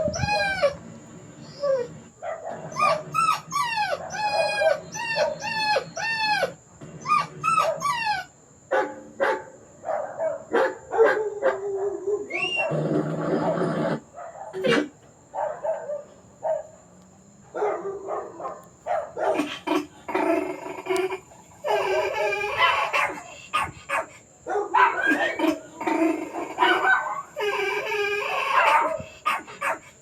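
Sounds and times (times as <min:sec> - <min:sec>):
dog whining and yelping: 0:00.0 - 0:08.4, 0:11.0 - 0:13.7, 0:18.4 - 0:24.2, 0:24.8 - 0:30.0.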